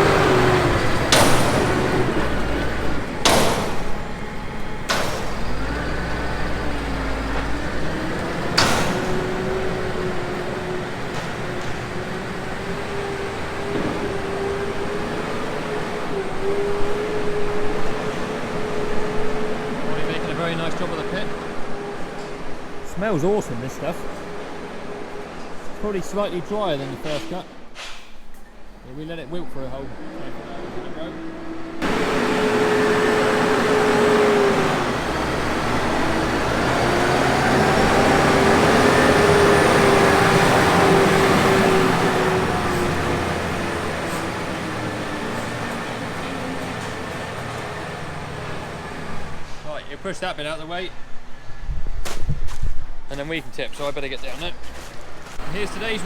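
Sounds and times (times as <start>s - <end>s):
tractor engine from inside cab: 0.0s - 21.4s, 31.8s - 49.6s, 55.4s - 56.0s.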